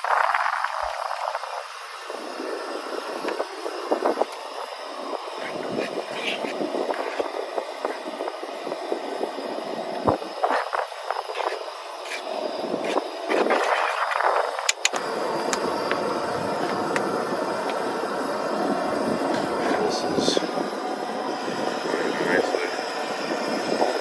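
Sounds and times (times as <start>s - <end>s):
wind gusting across microphone: 0.0s - 24.0s
sharp clicks: 14.6s - 16.0s.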